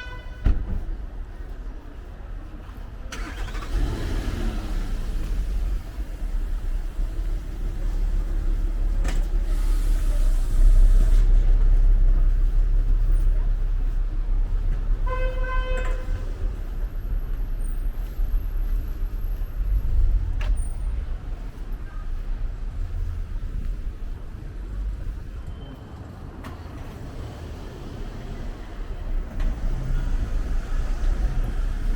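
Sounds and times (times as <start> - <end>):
vehicle horn: 0.0 - 0.5, 15.0 - 16.2
street traffic rumbling: 0.0 - 31.9.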